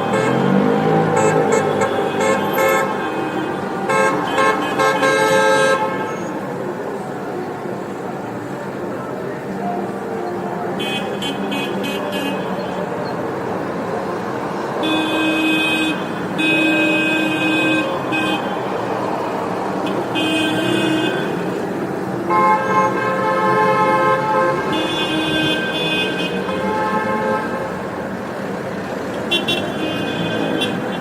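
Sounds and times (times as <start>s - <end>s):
car horns honking: 0.0s - 6.4s, 10.7s - 13.1s, 14.7s - 28.1s, 28.9s - 31.0s
road traffic hum: 0.0s - 31.0s.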